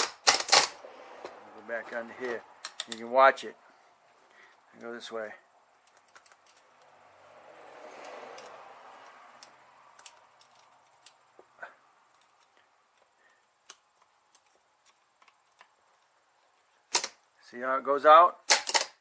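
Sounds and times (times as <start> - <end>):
soft handling rustle: 1.2 - 3.0.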